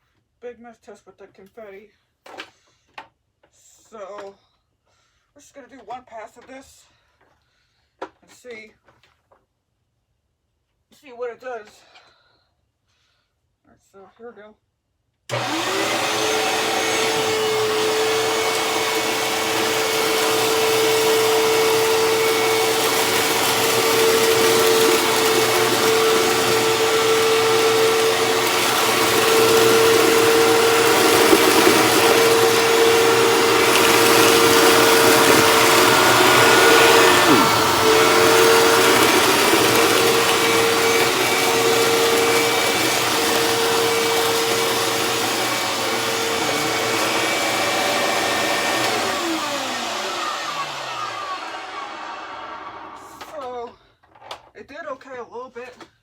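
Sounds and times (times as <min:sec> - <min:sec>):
vacuum cleaner motor humming: 0:15.3 - 0:53.2.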